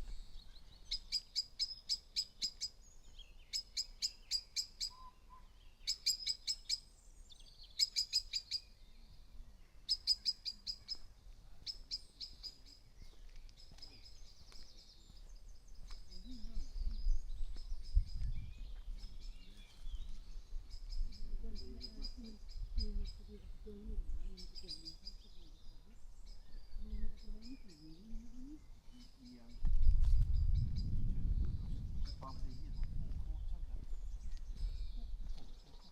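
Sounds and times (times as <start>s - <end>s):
birds chirping faintly: 0.0s - 35.9s
songbird singing high notes: 0.2s - 9.1s
low rumble: 29.8s - 35.2s.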